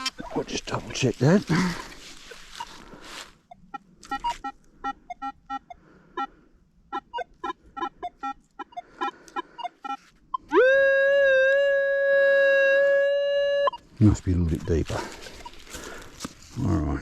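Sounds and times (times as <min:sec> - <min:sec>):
metal detector beeping: 0:03.4 - 0:06.3, 0:06.9 - 0:10.7, 0:12.9 - 0:15.6.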